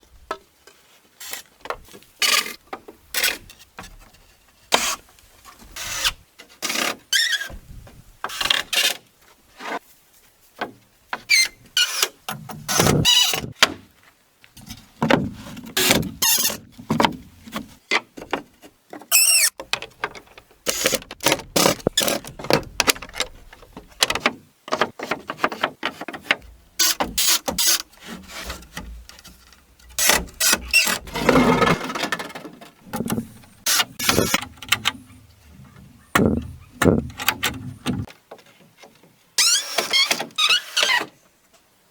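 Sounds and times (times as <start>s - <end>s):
hand tool knocking and cutting wood: 15.0s - 32.3s, 32.9s - 38.1s
squeal: 19.1s - 19.5s
squeaks: 19.1s - 19.6s, 30.0s - 31.8s, 39.4s - 41.1s.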